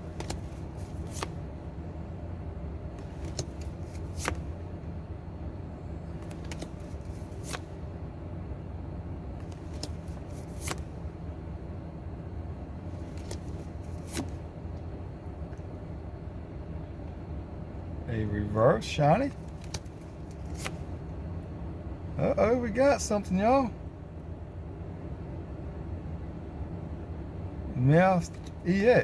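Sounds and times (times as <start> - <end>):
trading cards snapping: 0.0 - 1.4, 3.0 - 4.6, 6.2 - 7.7, 9.4 - 10.9, 13.0 - 14.4, 19.3 - 20.9
steady low hum: 0.0 - 29.0.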